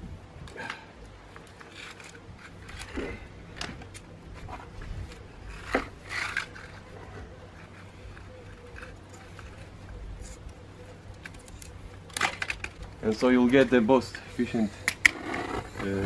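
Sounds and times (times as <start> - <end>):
tape rubbing and scraping: 1.3 - 16.0.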